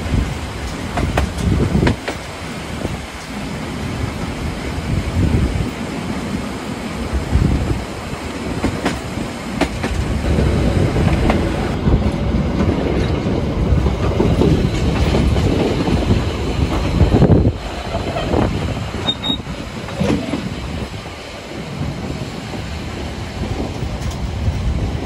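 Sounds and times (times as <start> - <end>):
steam train rumbling: 0.0 - 25.0
wheels clicking over rail joints: 0.2 - 3.5, 8.4 - 21.0.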